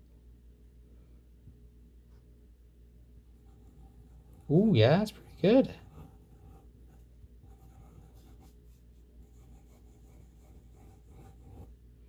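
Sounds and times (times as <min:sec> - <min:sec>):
fountain pen scratching on paper: 0:03.4 - 0:04.5, 0:05.2 - 0:11.8.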